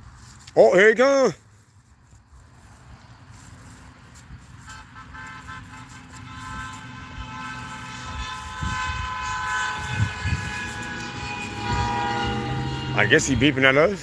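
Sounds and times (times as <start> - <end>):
car horn long blast: 4.6 - 14.0.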